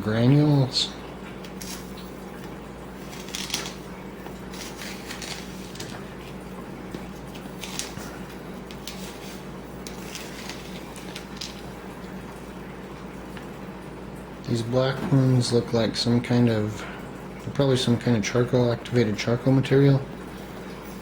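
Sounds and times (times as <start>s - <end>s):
low steady hum: 0.0s - 21.0s
filter granules rustling: 2.9s - 12.2s.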